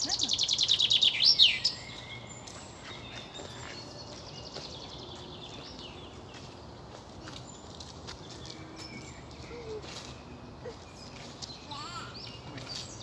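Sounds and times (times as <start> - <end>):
songbird trilling: 0.1 - 2.4.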